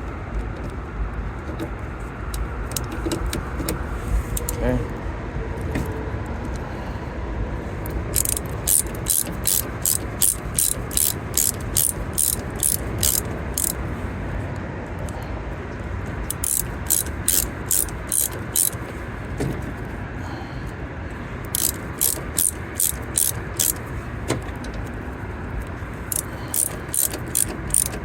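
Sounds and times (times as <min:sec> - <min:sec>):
socket ratchet clicking: 0:04.4 - 0:04.6, 0:07.8 - 0:13.8, 0:16.3 - 0:18.9, 0:21.4 - 0:24.0, 0:26.1 - 0:28.0.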